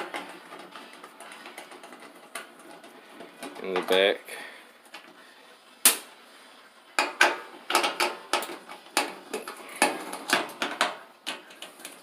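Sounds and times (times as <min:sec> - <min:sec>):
metal tools clicking and knocking: 0:07.0 - 0:12.0.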